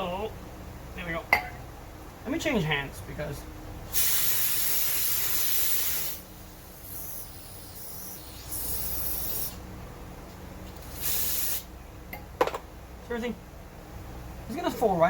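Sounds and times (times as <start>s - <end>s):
aerosol spray can hissing: 4.0s - 6.2s, 6.8s - 9.6s, 10.9s - 11.7s.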